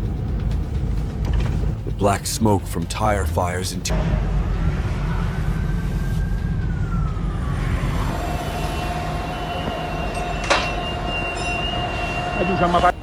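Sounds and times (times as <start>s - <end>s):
heavy low rumbling: 0.0s - 13.0s
emergency siren wailing: 4.1s - 13.0s.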